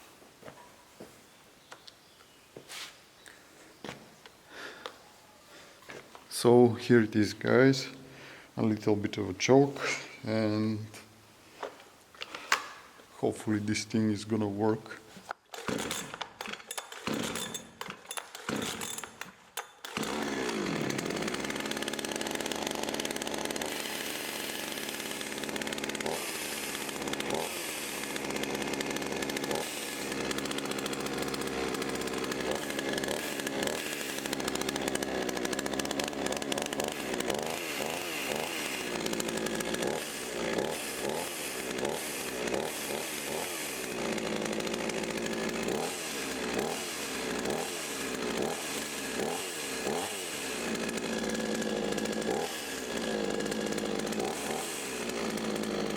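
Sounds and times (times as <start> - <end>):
chainsaw pull starter: 12.2 - 12.8, 15.2 - 55.9
chainsaw engine revving: 15.5 - 55.9.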